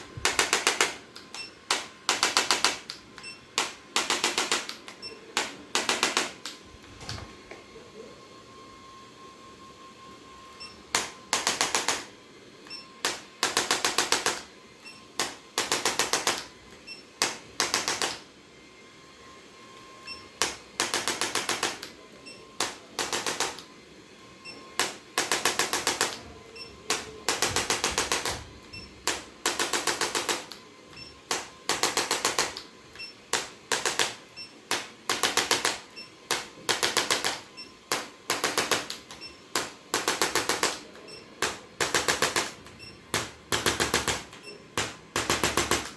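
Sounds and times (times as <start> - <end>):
rapid mechanical clicking: 26.9 - 45.9.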